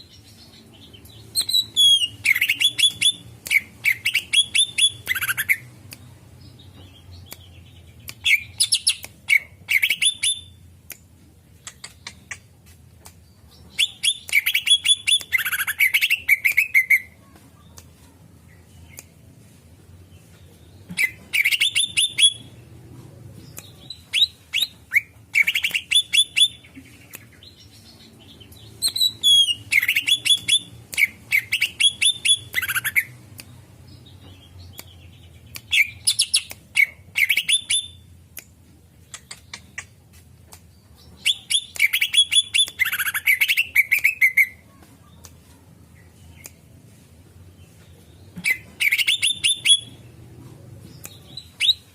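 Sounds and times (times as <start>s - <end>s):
bird clicking chatter: 11.6s - 12.5s, 39.0s - 40.0s.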